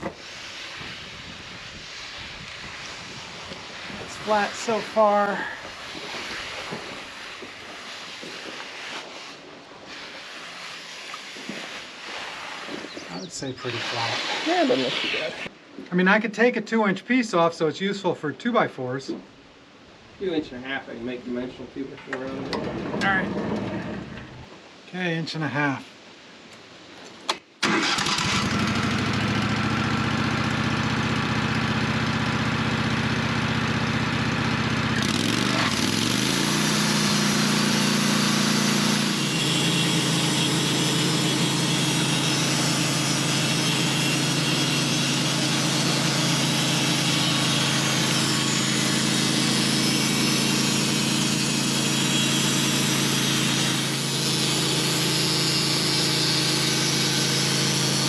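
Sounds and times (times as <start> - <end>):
sawmill engine idling and revving: 1.6 - 8.4, 27.8 - 58.0.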